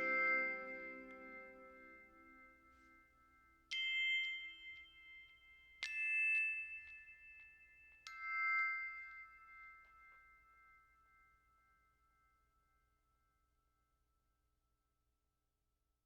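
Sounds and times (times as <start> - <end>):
bell-like chime notes: 0.0 - 2.8.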